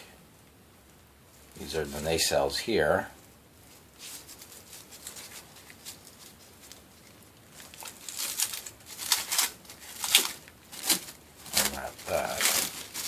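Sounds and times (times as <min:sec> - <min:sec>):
plastic packaging crinkling: 0:03.7 - 0:13.0.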